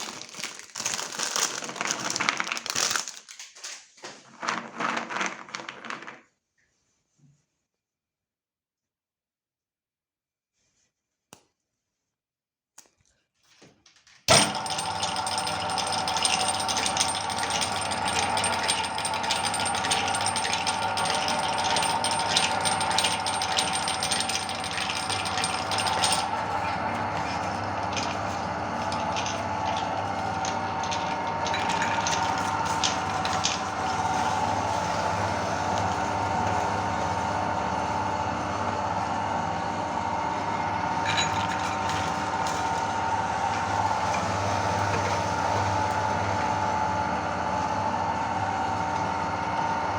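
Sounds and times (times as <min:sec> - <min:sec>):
electric meat grinder grinding cookies: 0:00.0 - 0:03.2, 0:14.3 - 0:49.9.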